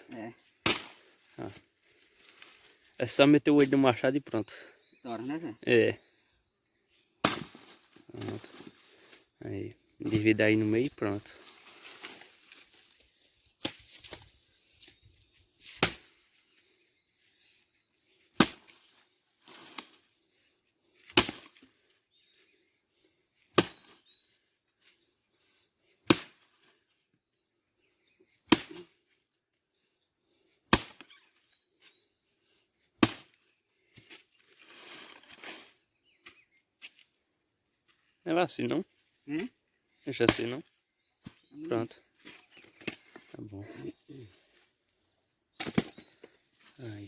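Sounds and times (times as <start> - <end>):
axe chopping firewood: 0.6 - 1.0, 7.2 - 7.7, 15.8 - 16.2, 18.4 - 18.8, 21.0 - 21.6, 23.5 - 23.9, 26.0 - 26.5, 28.5 - 28.9, 30.7 - 31.1, 33.0 - 33.4, 40.3 - 40.5, 42.2 - 43.2, 45.6 - 46.1.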